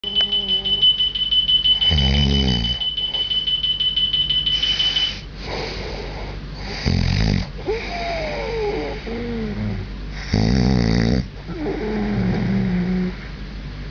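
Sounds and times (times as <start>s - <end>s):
alarm clock beeping: 0.0s - 5.3s
person snoring loudly: 1.9s - 2.8s, 8.8s - 13.1s
whistling breath tone: 4.4s - 5.3s.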